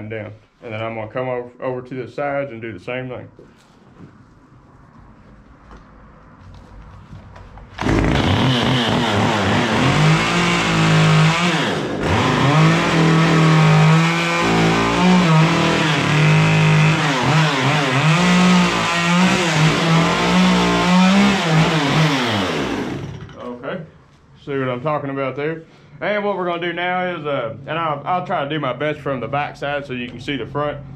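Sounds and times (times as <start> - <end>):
chainsaw cutting wood: 7.8 - 23.4.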